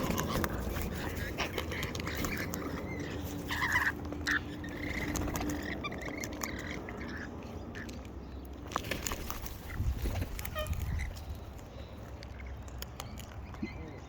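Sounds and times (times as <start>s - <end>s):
cockatoos squawking: 0.0s - 7.9s, 9.6s - 11.4s
beaks tapping at food: 0.0s - 14.0s.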